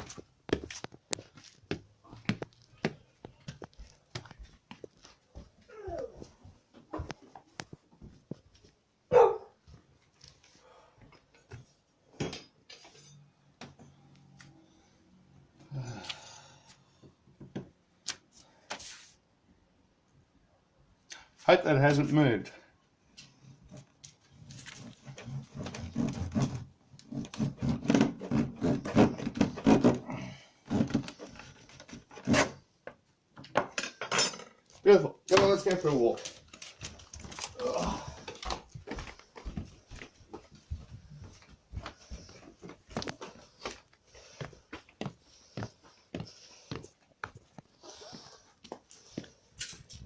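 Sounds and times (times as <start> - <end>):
dog barking: 9.1 - 9.6
kitchen knife sawing: 25.2 - 30.0.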